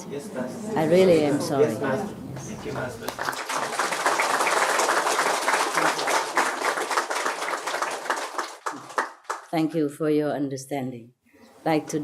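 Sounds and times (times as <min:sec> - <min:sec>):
audience applauding: 0:03.0 - 0:09.5.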